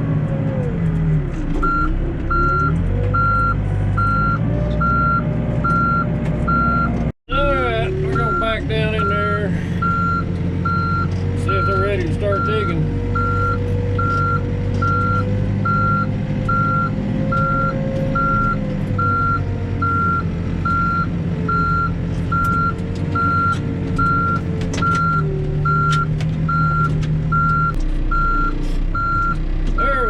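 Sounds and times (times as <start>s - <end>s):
diesel engine running: 0.0s - 30.0s
backup alarm beeping: 8.1s - 29.4s.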